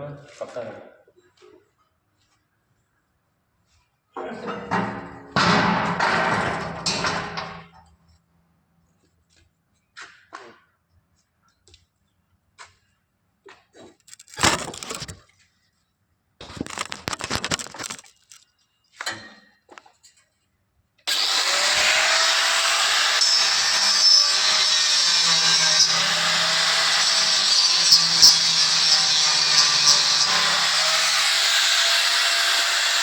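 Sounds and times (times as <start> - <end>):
metal scraping and tapping: 4.5 - 7.8, 14.0 - 15.2, 16.4 - 18.4, 23.2 - 33.0.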